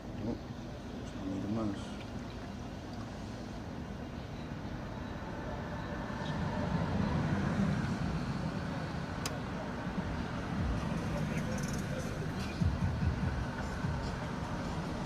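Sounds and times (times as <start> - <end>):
car passing by: 5.3 - 15.0.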